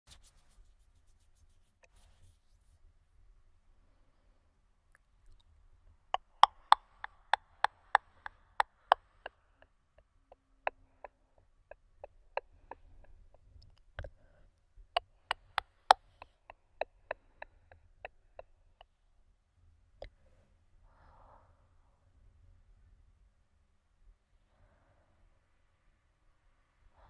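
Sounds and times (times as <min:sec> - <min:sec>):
mouth clicks: 0:06.2 - 0:09.4, 0:10.7 - 0:14.3, 0:15.0 - 0:18.5.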